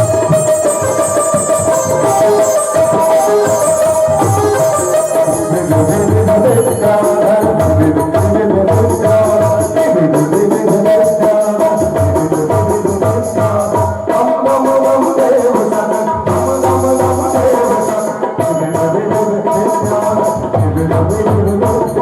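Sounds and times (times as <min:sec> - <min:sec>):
held melodic tones: 0:00.0 - 0:08.1
drums and hand percussion: 0:00.0 - 0:22.0.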